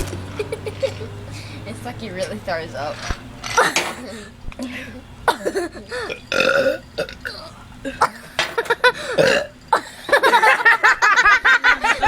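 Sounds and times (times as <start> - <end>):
voices giggling: 0.3 - 1.3, 9.8 - 12.0
person burping loudly: 5.3 - 8.3, 9.0 - 9.9.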